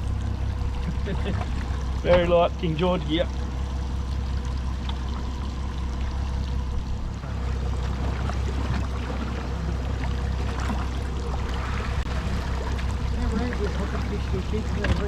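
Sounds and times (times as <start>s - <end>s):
low rumble: 0.0s - 15.0s
water lapping against boat hull: 0.0s - 15.0s.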